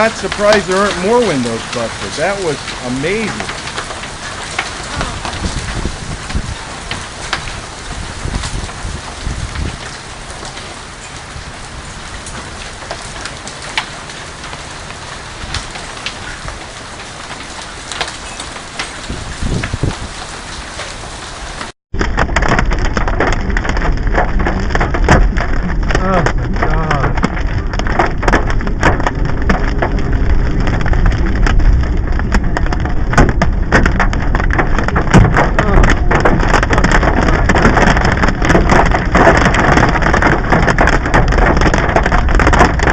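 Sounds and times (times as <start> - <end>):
hailstones clicking on hard surfaces: 0.0 - 42.9
rain hissing: 0.0 - 42.9
low rumble: 22.0 - 42.9.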